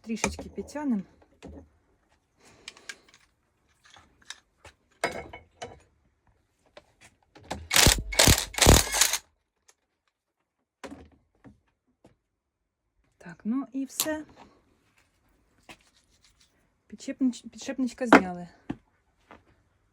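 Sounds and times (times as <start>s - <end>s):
metallic clicks and scrapes: 7.7s - 9.2s.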